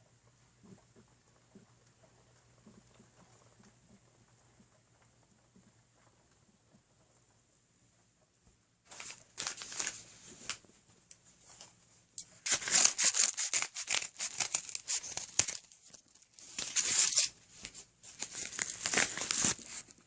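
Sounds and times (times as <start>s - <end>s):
packaging tearing and crinkling: 8.9s - 10.6s, 12.4s - 17.4s, 18.1s - 20.0s.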